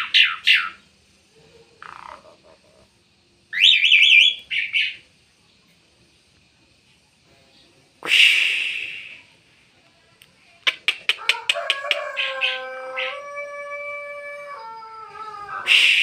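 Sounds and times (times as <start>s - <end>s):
bird calling: 1.8s - 2.7s, 3.5s - 5.1s.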